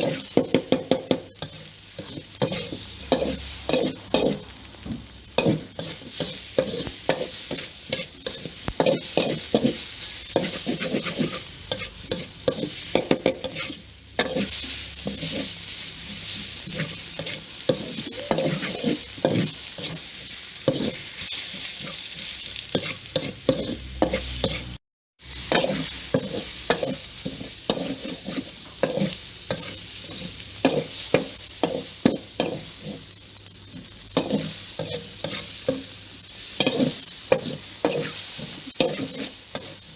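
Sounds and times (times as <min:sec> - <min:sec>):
food sizzling in a pan: 0:00.0 - 0:39.9
utensil scraping a pan: 0:01.4 - 0:04.5, 0:05.4 - 0:15.6, 0:16.6 - 0:20.1, 0:20.7 - 0:24.8, 0:25.5 - 0:33.1, 0:36.6 - 0:39.9.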